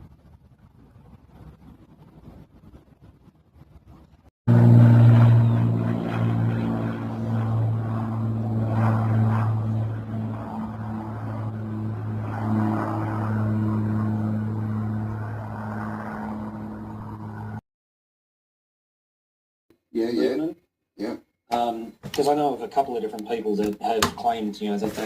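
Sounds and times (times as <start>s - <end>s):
engine droning: 4.5s - 17.6s.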